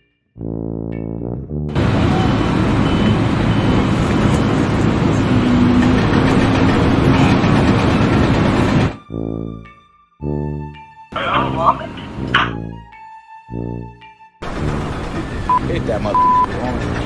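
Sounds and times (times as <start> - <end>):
heavy engine running: 1.7 - 9.0, 11.2 - 12.7, 14.4 - 17.0.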